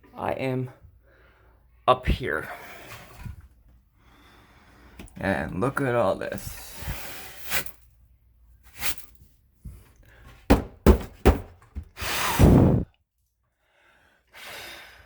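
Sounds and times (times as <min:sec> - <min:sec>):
knocks and thuds: 0:10.5 - 0:11.9.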